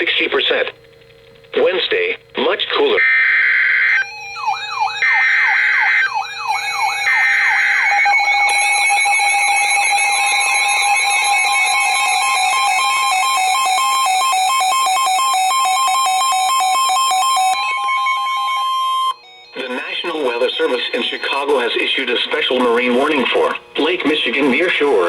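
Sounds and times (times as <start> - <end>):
warbling digital header tones: 2.9 - 14.0
sweeping siren tones: 3.0 - 21.4
steady alarm tone: 3.0 - 25.0
rapid pulsed beeps: 4.0 - 8.5.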